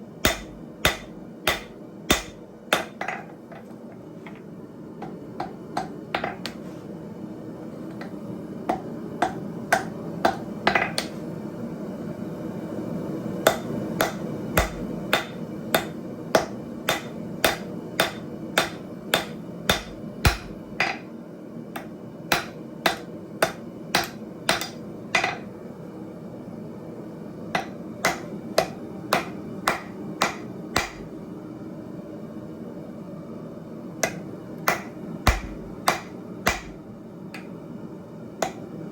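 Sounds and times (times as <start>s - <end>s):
hammer striking steel on anvil: 0.2s - 3.3s, 8.7s - 11.2s, 13.4s - 21.1s, 21.8s - 25.4s, 27.6s - 31.1s, 34.0s - 36.8s, 38.4s - 38.7s.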